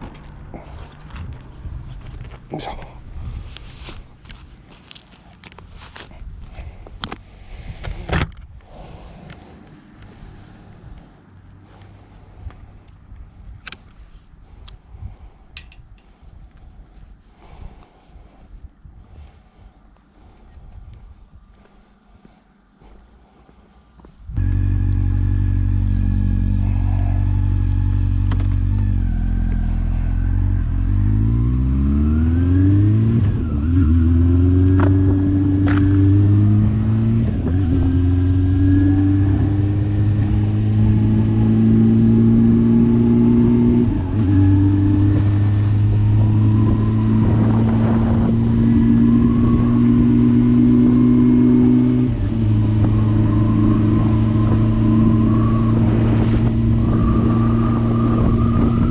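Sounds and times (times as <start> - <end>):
motorcycle engine revving: 24.4 - 58.9.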